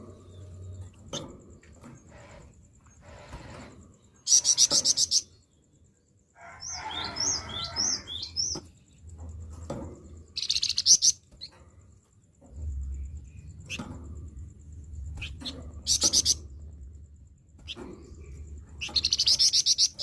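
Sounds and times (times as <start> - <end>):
songbird chattering: 10.4 - 11.5, 15.2 - 16.4, 18.2 - 20.0.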